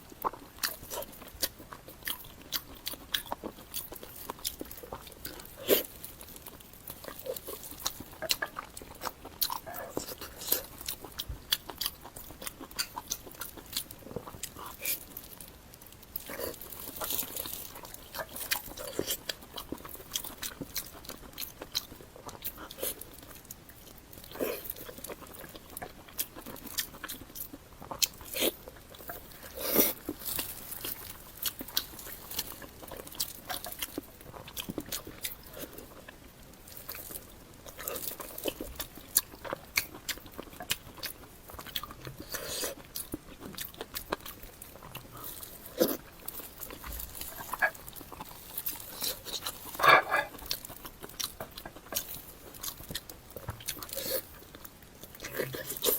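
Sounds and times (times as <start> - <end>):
chewing with wet mouth clicks: 0.1 - 55.9
biting into sausage: 36.8 - 55.9.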